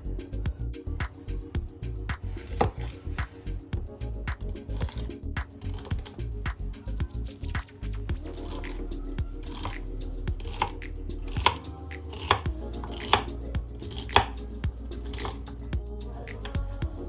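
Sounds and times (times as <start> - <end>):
soft background music: 0.0 - 17.0
knife chopping on cutting board: 2.5 - 2.9, 10.4 - 13.3, 13.9 - 14.4.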